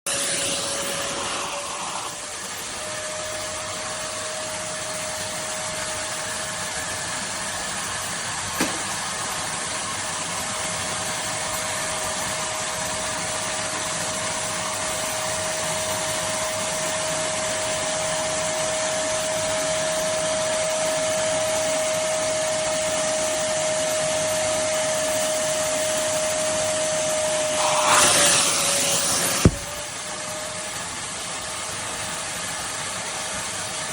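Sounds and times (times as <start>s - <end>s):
vacuum cleaner running: 0.1s - 33.9s.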